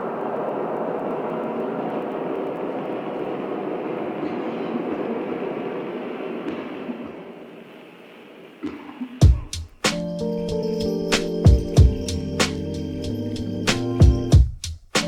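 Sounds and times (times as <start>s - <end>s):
steady rushing rumbling noise: 0.0s - 8.4s.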